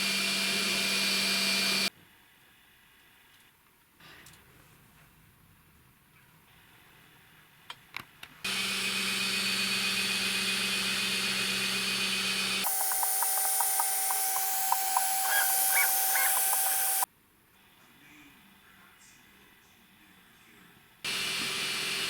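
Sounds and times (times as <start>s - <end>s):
printer fan hiss and motor whine: 12.6s - 17.1s.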